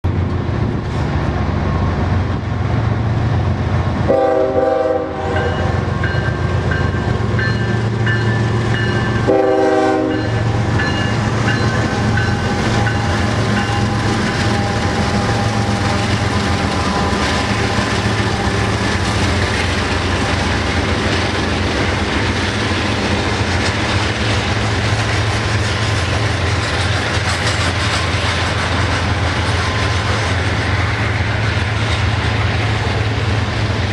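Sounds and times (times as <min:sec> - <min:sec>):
train rumble and wheel clatter: 0:00.0 - 0:33.9
locomotive horn blasts: 0:04.1 - 0:05.9, 0:09.2 - 0:10.6.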